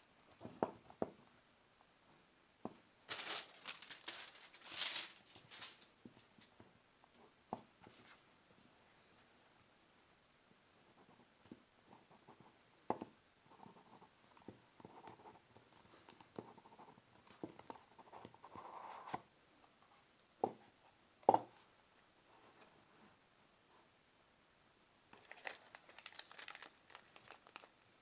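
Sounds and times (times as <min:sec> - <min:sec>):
packaging scratching and rustling: 0:03.1 - 0:05.9, 0:25.2 - 0:27.8.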